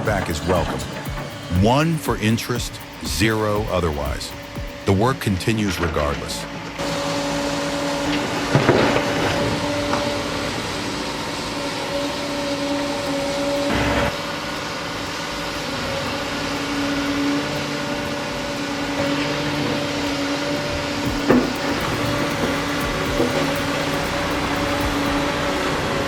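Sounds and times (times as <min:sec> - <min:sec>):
diesel engine humming: 0:00.0 - 0:26.0
loud knocks: 0:21.1 - 0:25.3.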